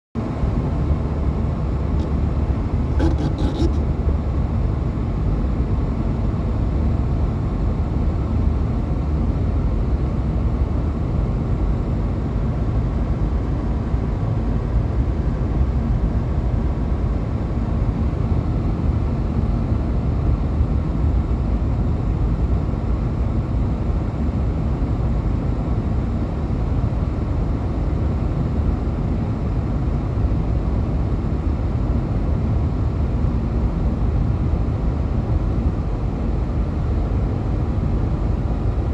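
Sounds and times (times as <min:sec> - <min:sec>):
car engine and tyre rumble: 0:00.2 - 0:38.9
faint steady hum: 0:00.4 - 0:04.2.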